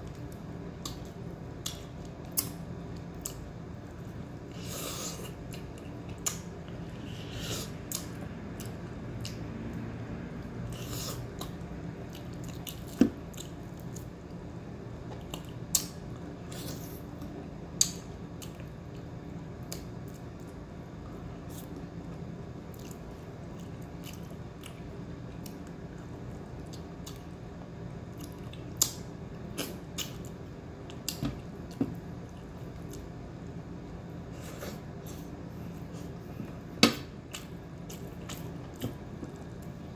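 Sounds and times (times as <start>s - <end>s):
steady low hum: 0.0s - 39.9s
chewing: 22.7s - 27.3s.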